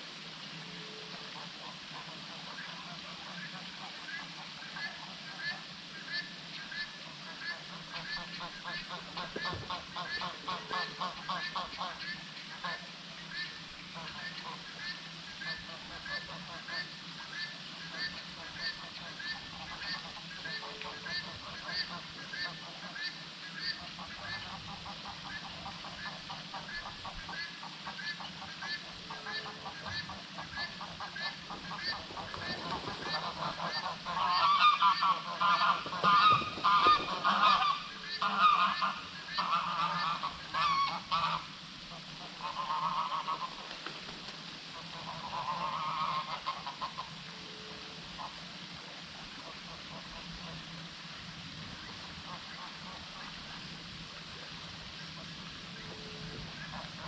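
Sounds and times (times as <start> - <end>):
bird honking calls: 26.7 - 41.5.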